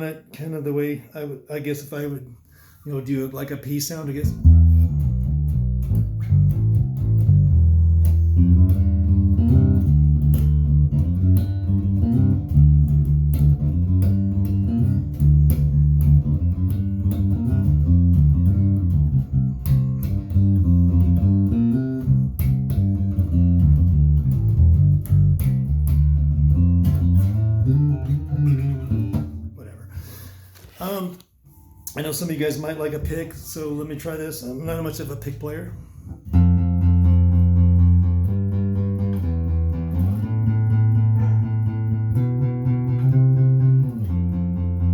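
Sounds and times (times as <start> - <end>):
electric bass plucked notes: 4.2 - 29.6, 34.6 - 44.9.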